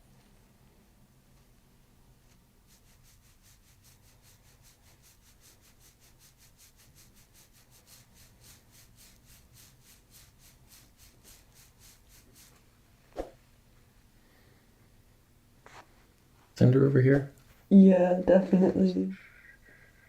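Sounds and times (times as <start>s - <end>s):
hands rubbing skin in massage: 2.3s - 13.4s.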